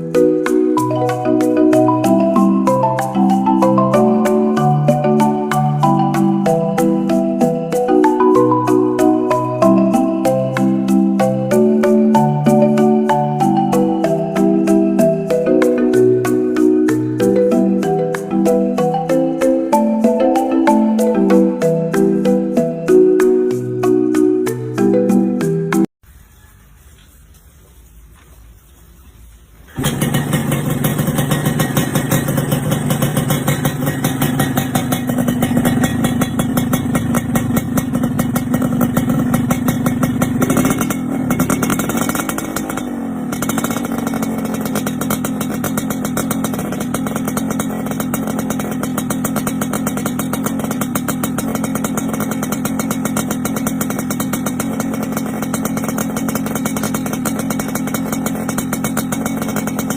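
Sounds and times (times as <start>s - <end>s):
motorcycle engine idling: 0.0s - 25.8s, 29.7s - 59.9s.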